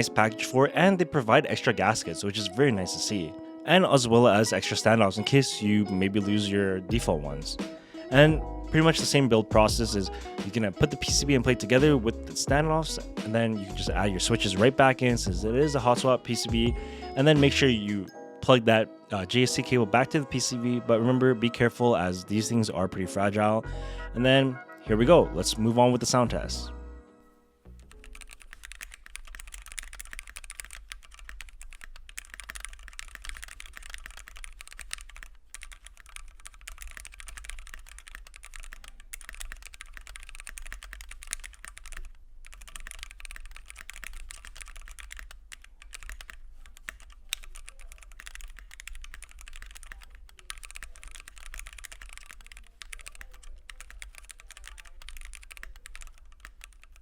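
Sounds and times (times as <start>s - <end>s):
fast mechanical keyboard typing: 27.8s - 57.0s.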